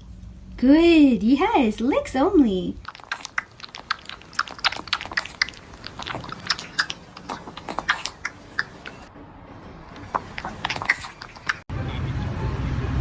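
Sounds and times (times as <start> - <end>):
pet chewing and crunching food: 2.8 - 9.1, 9.9 - 11.7.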